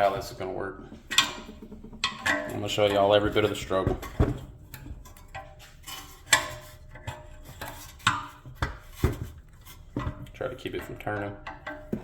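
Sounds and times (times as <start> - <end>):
tools knocking on metal: 1.0 - 4.5.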